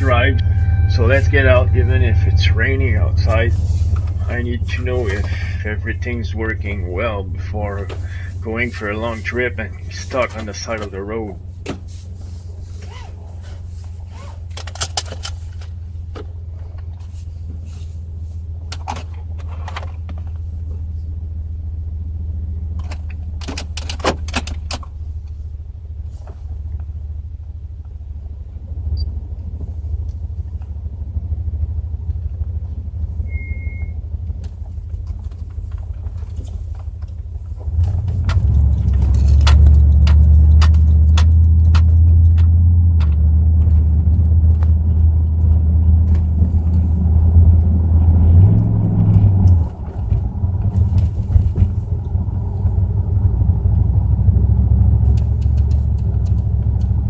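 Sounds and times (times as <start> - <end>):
short beep: 0.0 - 3.3, 33.2 - 34.0
car engine running: 0.0 - 57.0.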